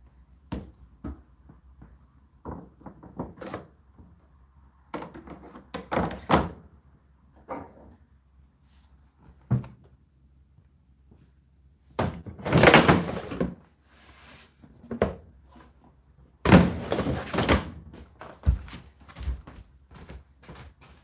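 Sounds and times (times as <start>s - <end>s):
thuds and clatters of dropping load: 16.4s - 17.8s.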